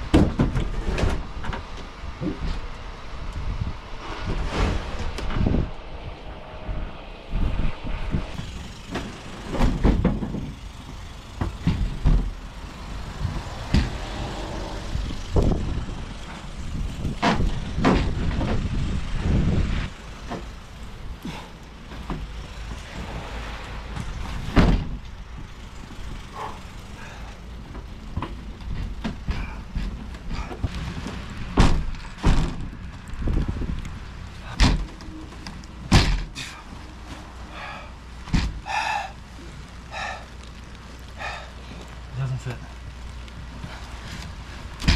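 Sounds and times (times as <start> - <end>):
knocks and thuds: 0.0 - 1.6, 8.9 - 12.4, 13.2 - 14.3, 17.0 - 18.8, 23.9 - 25.1, 27.7 - 33.6, 34.4 - 35.0, 35.8 - 36.5, 38.2 - 38.6.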